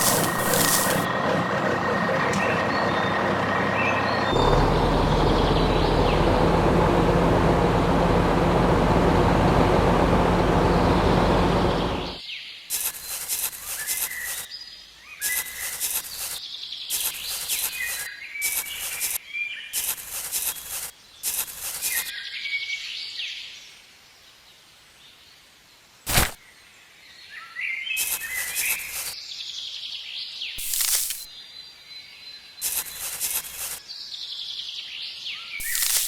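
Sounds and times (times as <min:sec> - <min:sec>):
sharp click: 0:30.6 - 0:31.3.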